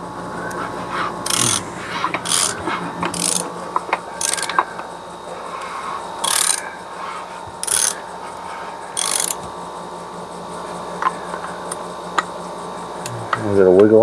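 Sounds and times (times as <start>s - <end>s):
hand ratchet clicking: 0.5s - 9.5s.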